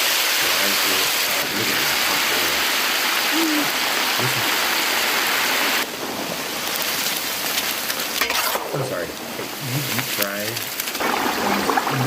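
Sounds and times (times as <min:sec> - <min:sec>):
chicken sizzling in hot oil: 0:00.0 - 0:05.8.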